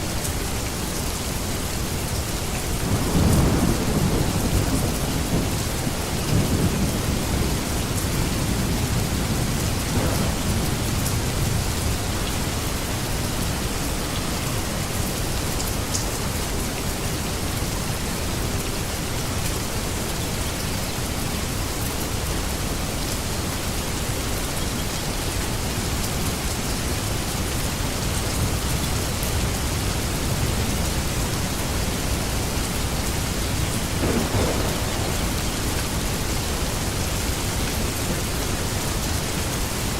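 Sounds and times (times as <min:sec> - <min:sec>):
heavy rain hissing: 0:00.0 - 0:39.9
thunder rumbling: 0:01.2 - 0:15.0, 0:29.3 - 0:39.9.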